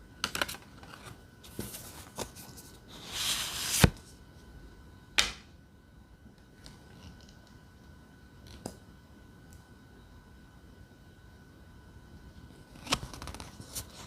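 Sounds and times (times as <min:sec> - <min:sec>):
cards being shuffled: 0:03.0 - 0:04.0.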